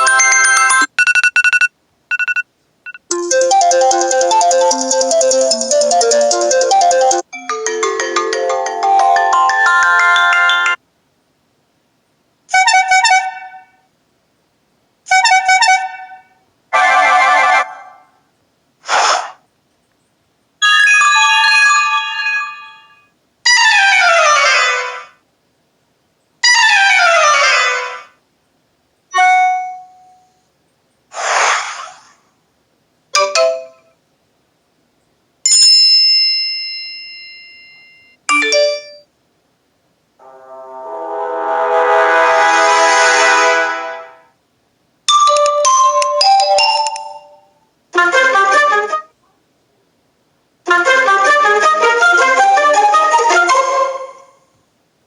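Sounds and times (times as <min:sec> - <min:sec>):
phone chiming tones: 0:00.0 - 0:05.6
quick swishes: 0:18.8 - 0:19.4, 0:31.1 - 0:32.2
falling tone sweeps: 0:40.2 - 0:44.2.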